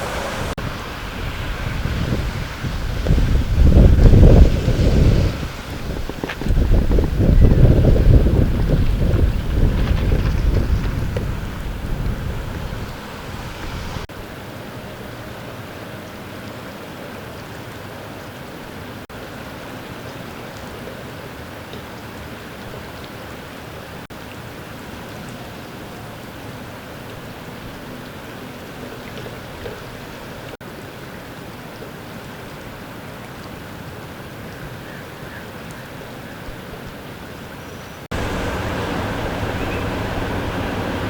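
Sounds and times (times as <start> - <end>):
rain: 0.0 - 41.0
running floodwater: 0.0 - 41.0.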